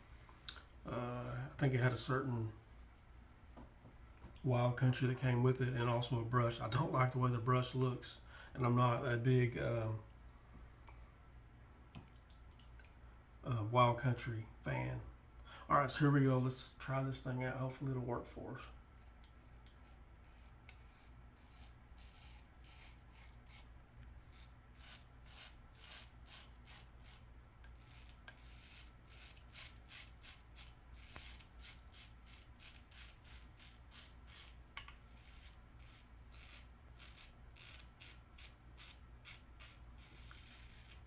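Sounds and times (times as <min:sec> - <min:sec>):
razor scraping stubble: 0:18.9 - 0:41.0.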